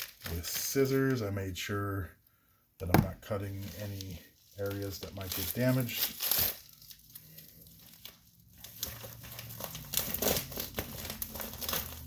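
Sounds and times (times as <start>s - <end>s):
paper and plastic rustling: 3.0s - 12.0s
scissors cutting envelope: 8.8s - 12.0s.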